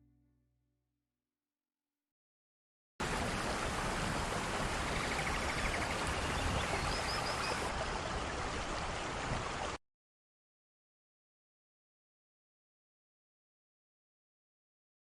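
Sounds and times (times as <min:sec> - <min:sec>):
steady rain falling: 0:03.0 - 0:09.8.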